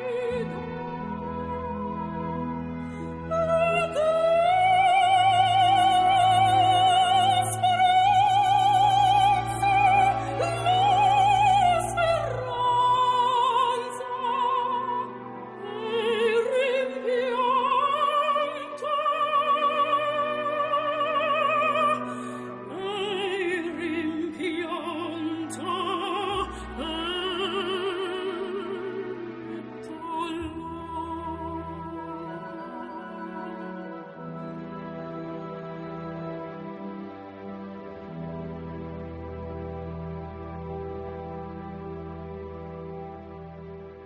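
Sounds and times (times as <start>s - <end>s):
operatic high voice singing: 0.0s - 34.3s.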